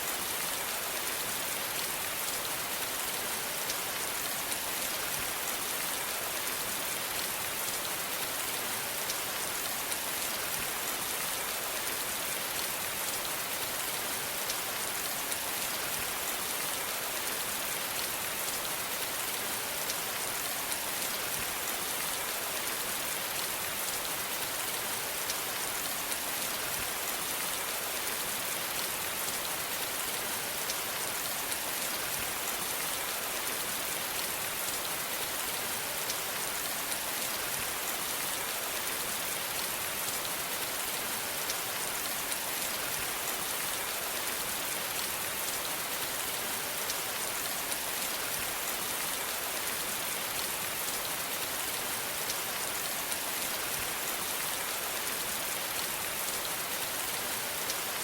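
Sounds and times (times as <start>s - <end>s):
steady rain falling: 0.0s - 58.0s.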